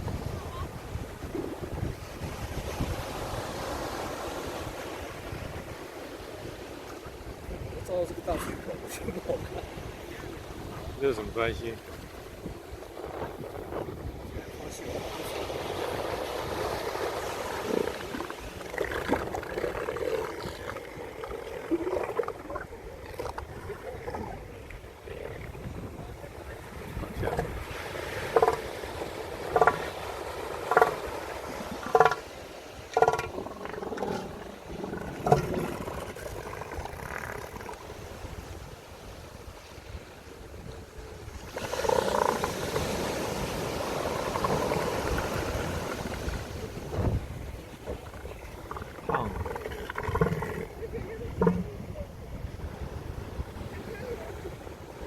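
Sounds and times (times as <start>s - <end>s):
elephant seals snoring and grunting: 15.0s - 38.2s, 41.3s - 51.9s
elephant seals rasping calls: 29.4s - 37.9s, 43.8s - 46.5s.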